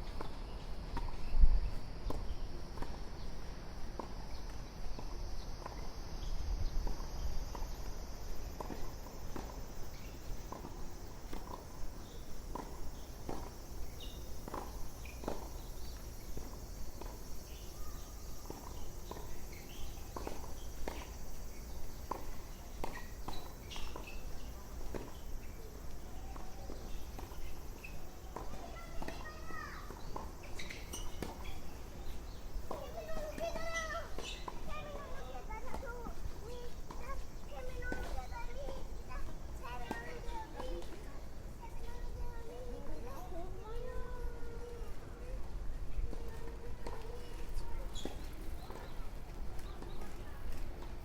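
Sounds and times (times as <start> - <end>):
cicada chorus: 0.0 - 51.0
footsteps walking: 46.2 - 51.0.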